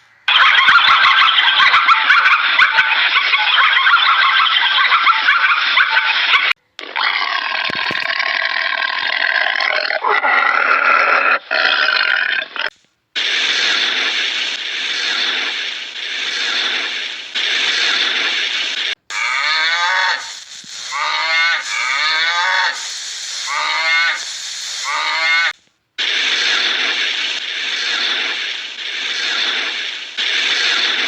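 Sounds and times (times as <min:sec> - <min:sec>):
repeated animal calls: 0:00.0 - 0:12.7, 0:19.1 - 0:25.6
rhythmic noisy hissing: 0:13.2 - 0:31.0.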